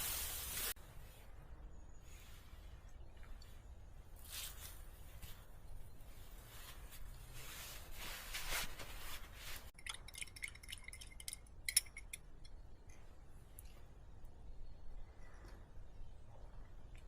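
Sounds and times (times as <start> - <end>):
rustle: 0.0 - 1.4, 2.0 - 9.7.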